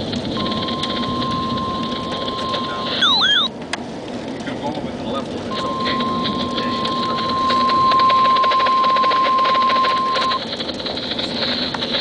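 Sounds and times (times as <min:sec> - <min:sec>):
radio static hiss and crackling: 0:00.0 - 0:03.5, 0:04.2 - 0:12.0
steady high alert tone: 0:00.4 - 0:03.5.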